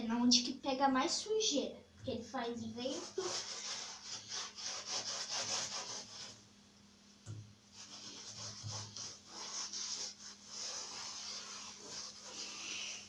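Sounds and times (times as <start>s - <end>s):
brush scrubbing fan grille: 2.0s - 6.4s, 7.7s - 13.0s.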